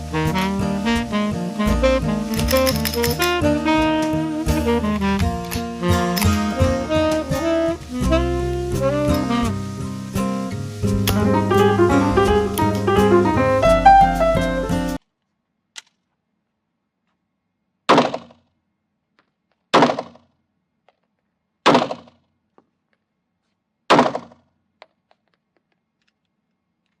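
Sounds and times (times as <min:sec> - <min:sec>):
music: 0:00.0 - 0:15.0.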